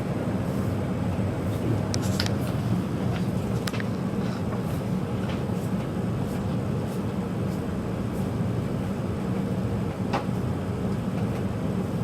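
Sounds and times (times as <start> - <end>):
gas burners humming: 0.0 - 6.1.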